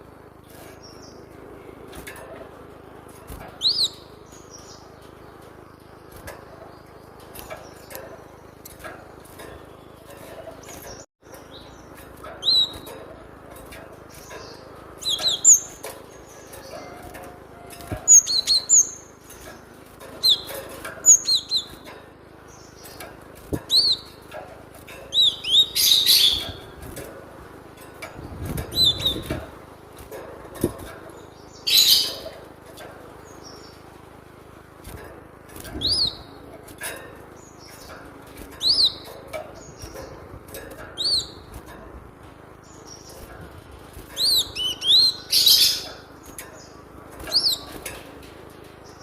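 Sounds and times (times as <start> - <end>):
bird chirping: 3.0 - 27.0, 28.2 - 29.6, 30.6 - 32.5, 35.6 - 36.5, 37.2 - 41.7, 42.6 - 48.0.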